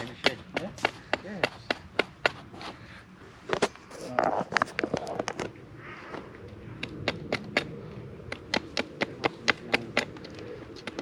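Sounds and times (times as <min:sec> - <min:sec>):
sharp irregular taps: 0:00.0 - 0:02.7, 0:08.3 - 0:10.2.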